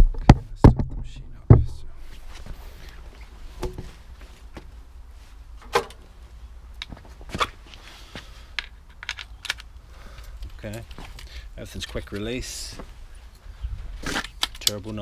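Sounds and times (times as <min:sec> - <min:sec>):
steady low rumble: 0:00.0 - 0:07.2
hose fittings clicking together: 0:08.6 - 0:11.3, 0:14.1 - 0:15.0.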